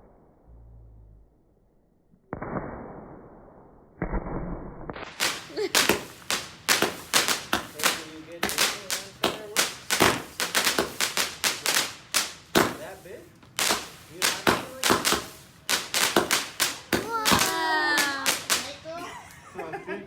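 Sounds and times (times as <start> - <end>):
rapid firework shots: 4.0 - 19.0
firework bangs: 4.0 - 19.4.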